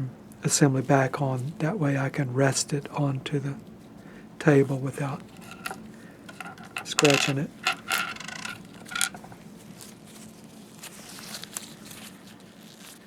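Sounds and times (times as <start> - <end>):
quiet fiddling with metal parts: 3.6 - 12.8
metal parts clicking and scraping: 5.2 - 9.4.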